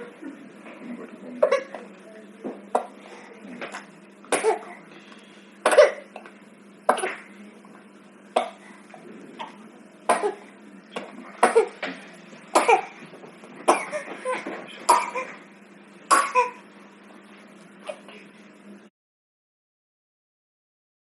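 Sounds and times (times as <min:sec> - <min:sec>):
baby coughing: 0:01.4 - 0:01.8, 0:04.3 - 0:04.8, 0:05.6 - 0:06.3, 0:06.9 - 0:07.3, 0:08.4 - 0:08.6, 0:09.4 - 0:10.5, 0:11.4 - 0:11.8, 0:12.5 - 0:13.0, 0:13.7 - 0:15.4, 0:16.1 - 0:16.6.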